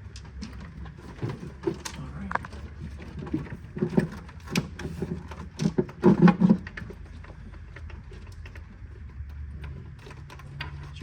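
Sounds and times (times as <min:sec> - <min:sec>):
low steady background noise: 0:00.0 - 0:11.0.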